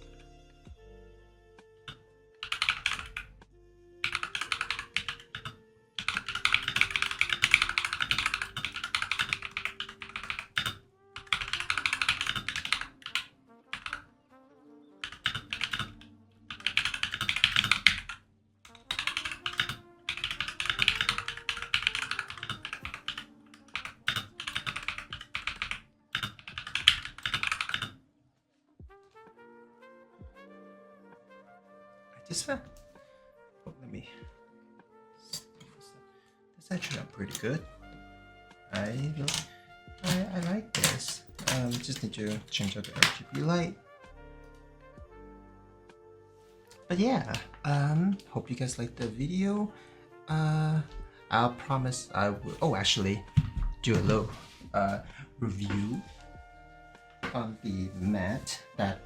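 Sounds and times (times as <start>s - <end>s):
soft background music: 0.0s - 59.0s
mechanical keyboard typing: 2.4s - 3.3s, 4.0s - 14.0s, 15.0s - 27.9s, 38.8s - 43.5s.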